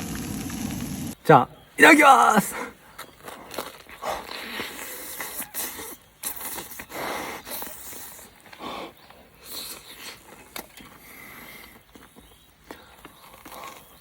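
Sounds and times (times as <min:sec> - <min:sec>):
crunching and chewing: 0:09.5 - 0:14.0.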